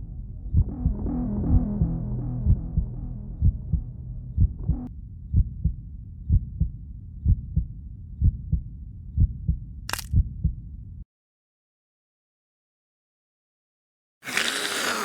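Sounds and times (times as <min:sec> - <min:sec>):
heartbeat thumps: 0:00.0 - 0:10.6.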